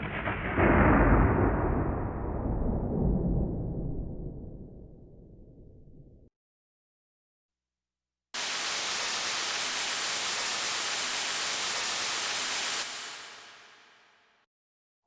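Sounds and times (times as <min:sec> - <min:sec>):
low rumble: 0:00.0 - 0:06.3
synthesizer white noise hiss: 0:08.4 - 0:14.2.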